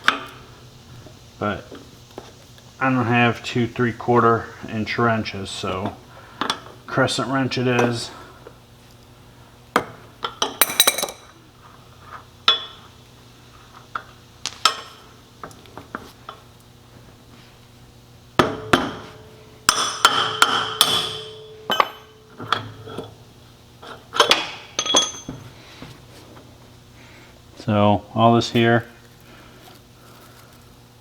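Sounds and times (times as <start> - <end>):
wrench clanking on metal nut: 23.8 - 25.4.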